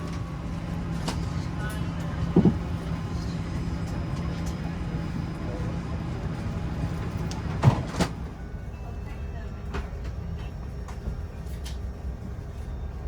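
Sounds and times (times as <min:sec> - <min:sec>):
air-conditioning hum: 0:00.0 - 0:08.2
short knock: 0:02.4 - 0:02.6.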